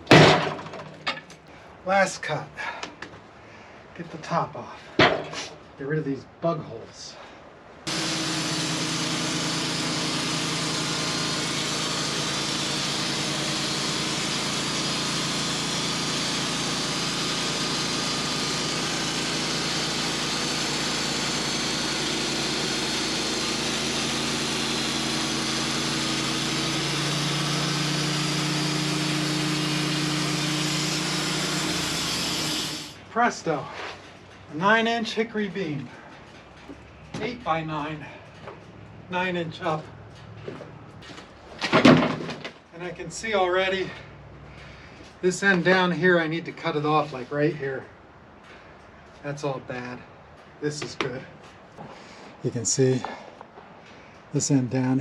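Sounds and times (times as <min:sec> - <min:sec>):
blade sawing through log: 0:07.9 - 0:33.0
sawmill engine hum: 0:07.9 - 0:33.7.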